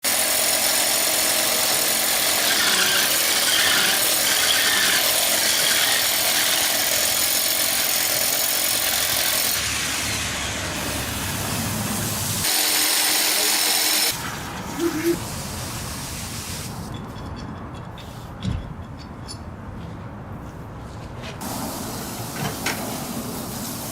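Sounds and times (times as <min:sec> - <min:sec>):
power tool whining: 0:00.1 - 0:09.6, 0:12.4 - 0:14.2.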